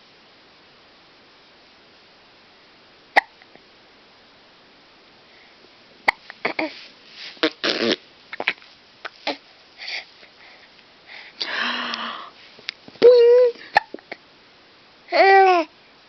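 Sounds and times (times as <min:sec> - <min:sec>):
baby hiccupping: 0:03.2 - 0:03.6, 0:06.1 - 0:06.8, 0:07.4 - 0:09.4
baby vocal sounds: 0:06.1 - 0:06.8, 0:07.4 - 0:09.4, 0:15.1 - 0:15.7.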